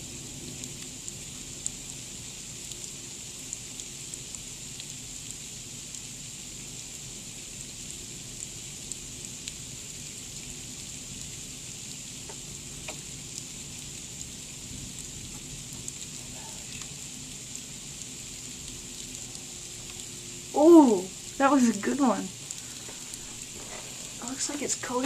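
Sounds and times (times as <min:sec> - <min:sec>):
freezing rain hissing: 0:00.0 - 0:25.0
ice pellets ticking on house: 0:15.2 - 0:25.0.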